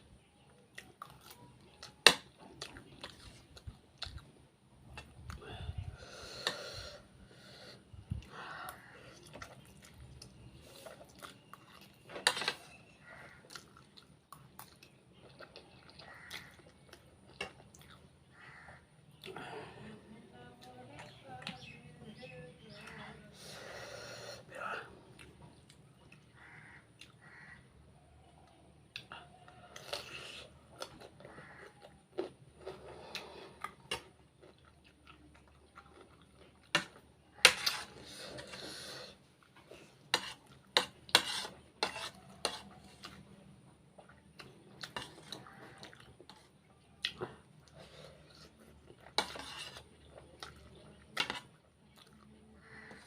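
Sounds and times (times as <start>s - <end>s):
chewing and mouth noises: 0.6s - 5.5s, 8.1s - 19.4s, 28.8s - 53.0s.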